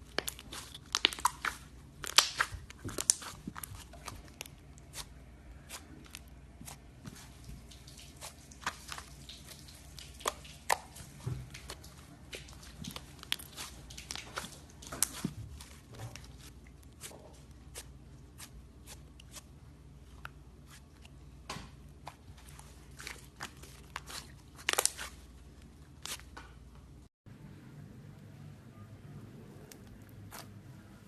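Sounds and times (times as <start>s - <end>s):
slime crackling and clicking: 0.1s - 4.5s.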